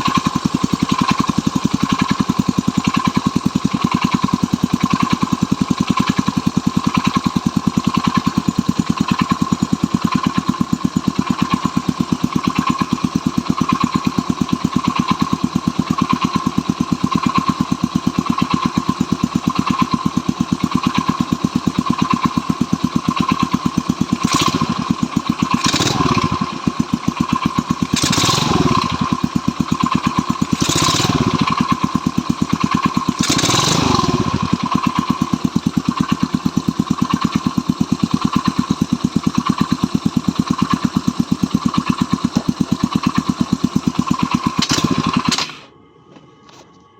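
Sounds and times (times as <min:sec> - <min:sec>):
motorcycle engine idling with knock: 0:00.0 - 0:45.7
motorcycle throttle blips: 0:30.0 - 0:45.7.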